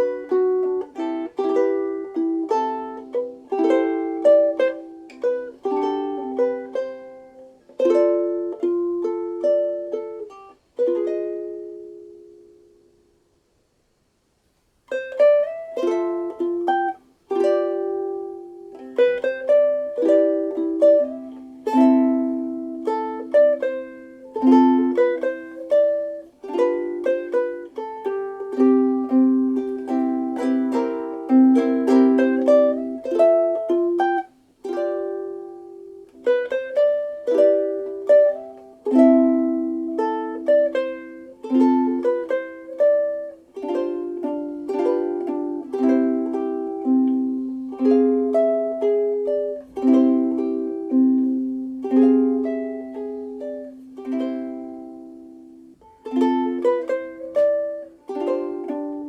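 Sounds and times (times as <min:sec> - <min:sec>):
ukulele playing: 0:00.0 - 0:13.5, 0:14.8 - 0:59.0.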